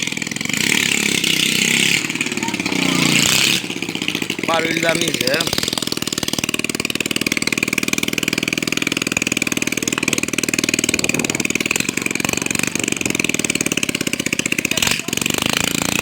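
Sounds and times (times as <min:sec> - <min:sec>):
motorcycle engine idling: 0:00.0 - 0:16.0
man talking: 0:04.4 - 0:05.6.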